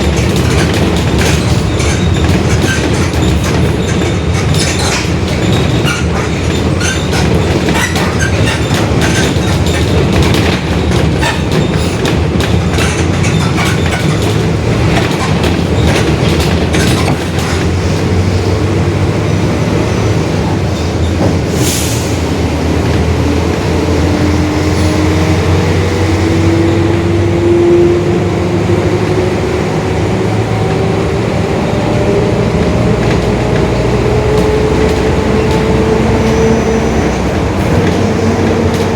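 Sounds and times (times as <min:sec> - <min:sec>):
body rattling: 0:00.0 - 0:18.2
bus engine drone: 0:00.0 - 0:38.9.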